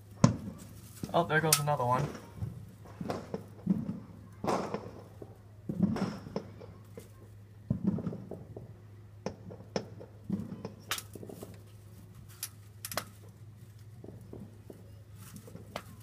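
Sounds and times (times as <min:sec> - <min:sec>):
firework cracks and pops: 0:00.0 - 0:11.8, 0:12.5 - 0:16.0
distant firework booms: 0:02.0 - 0:06.8, 0:07.6 - 0:11.4.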